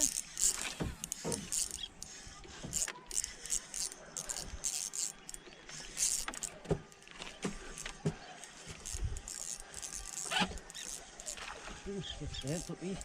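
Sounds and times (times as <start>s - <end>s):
fishing tackle clicks and rustles: 0.0s - 13.0s.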